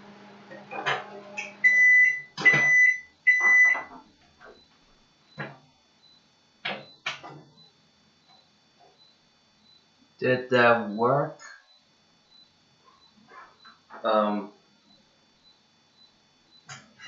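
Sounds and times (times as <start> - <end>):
microwave oven humming: 0.0 - 17.0
microwave long beeps: 0.1 - 17.0
knocks and clicks: 6.6 - 7.5.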